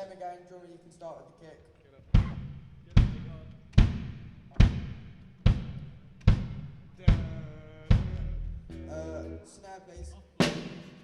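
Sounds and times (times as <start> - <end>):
kick drum thuds: 2.1 - 8.5.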